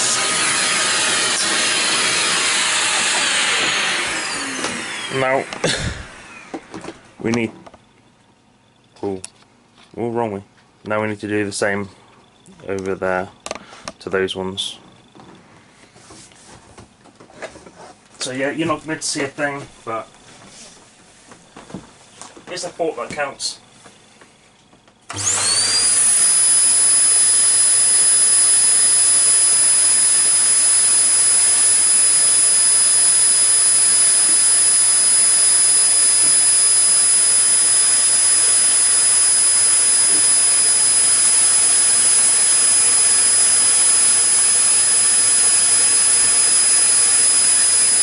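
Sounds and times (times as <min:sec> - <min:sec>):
electric motor whining: 0:00.0 - 0:07.1, 0:25.1 - 0:48.0.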